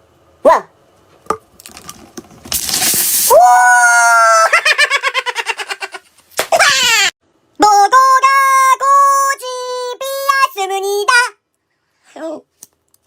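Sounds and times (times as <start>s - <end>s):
person squealing and cackling: 3.2s - 7.2s.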